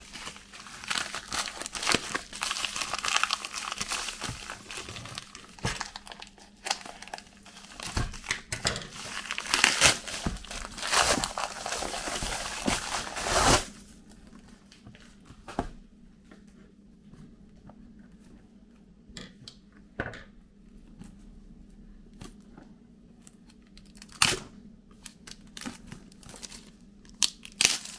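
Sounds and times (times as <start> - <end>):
packaging crinkling and tearing: 0.0 - 14.0, 25.3 - 27.9.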